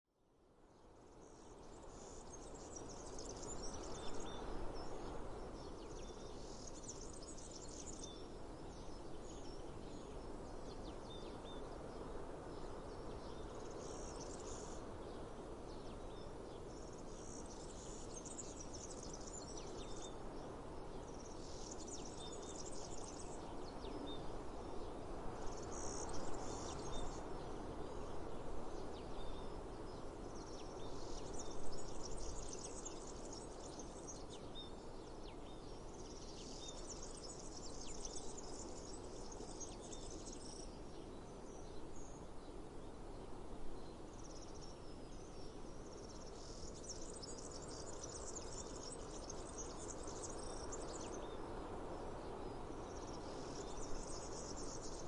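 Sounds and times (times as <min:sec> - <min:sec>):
birds and insects chirping: 0:16.5 - 0:28.2, 0:29.2 - 0:55.0.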